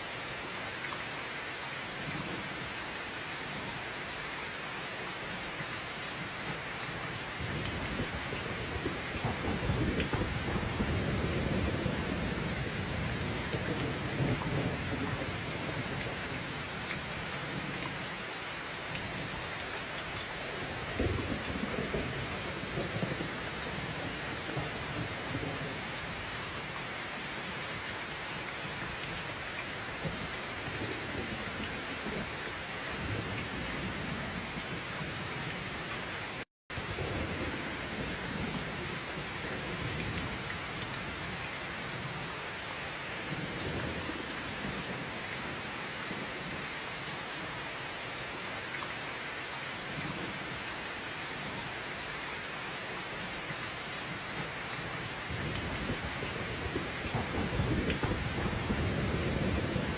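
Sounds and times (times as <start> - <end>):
heavy rain: 0.0 - 59.9
low rolling thunder: 7.4 - 16.2, 20.7 - 25.9, 55.3 - 59.9.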